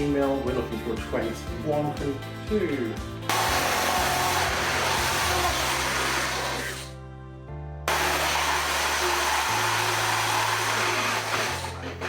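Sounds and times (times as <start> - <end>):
drill grinding through metal: 3.3 - 7.0, 7.9 - 12.0.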